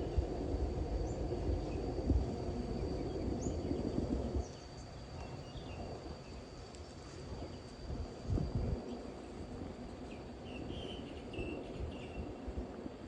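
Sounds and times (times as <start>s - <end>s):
high insect drone: 0.0s - 13.0s.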